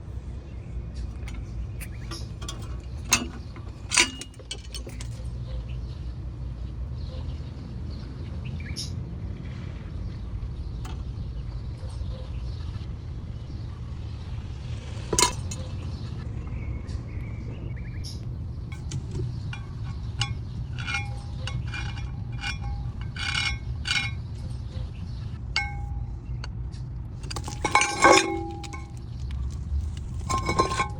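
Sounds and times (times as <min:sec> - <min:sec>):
car brakes clinking: 0:01.2 - 0:05.2, 0:15.1 - 0:15.7, 0:18.7 - 0:24.2, 0:27.2 - 0:30.9
car low rumble: 0:09.3 - 0:30.9.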